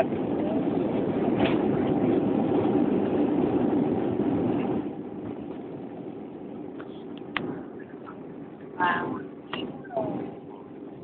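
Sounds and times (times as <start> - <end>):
jet engine and air rush: 0.2 - 11.0.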